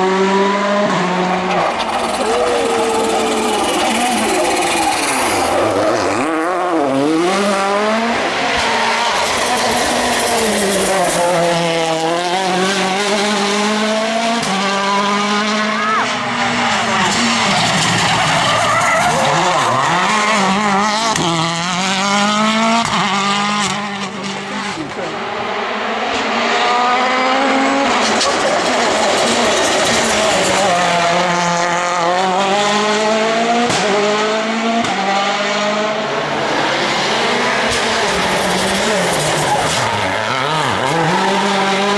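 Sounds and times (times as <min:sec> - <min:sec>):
rally car engine revving: 0:00.0 - 0:41.9.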